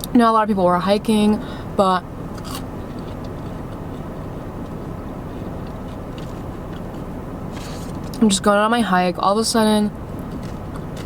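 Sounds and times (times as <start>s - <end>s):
low background hum: 0.0s - 11.0s
soft chewing clicks: 2.4s - 8.2s.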